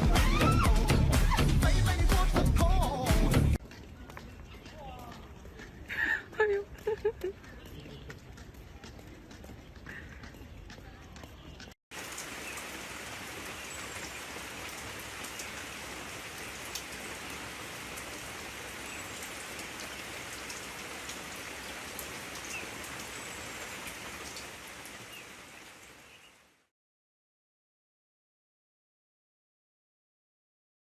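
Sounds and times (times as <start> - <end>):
light ticks like rain patter: 12.0 - 26.4.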